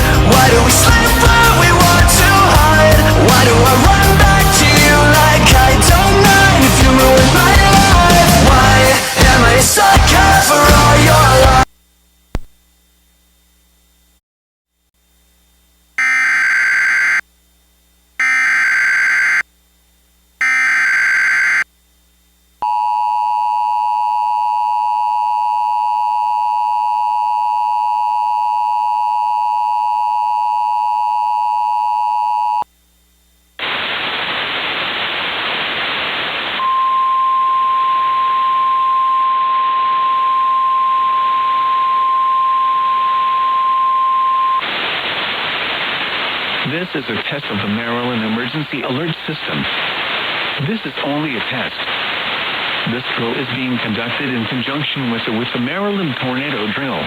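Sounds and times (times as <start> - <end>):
data burst tones: 16.0 - 17.2, 18.2 - 19.4, 20.4 - 21.6
radio static: 16.0 - 17.2, 18.2 - 19.4, 20.4 - 21.6, 33.6 - 36.8, 44.6 - 57.0
two-tone attention signal: 16.0 - 17.2, 18.2 - 19.4, 20.4 - 21.6, 36.6 - 44.6
steady single tone: 36.6 - 44.6.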